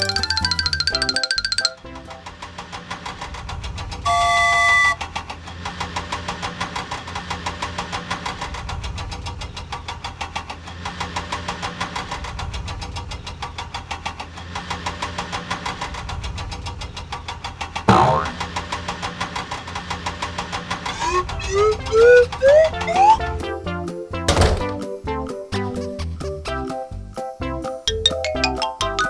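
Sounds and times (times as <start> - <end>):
cartoon engine chugging: 0.0 - 2.0, 17.9 - 18.6, 20.8 - 24.3
horn-like beep: 4.1 - 5.0.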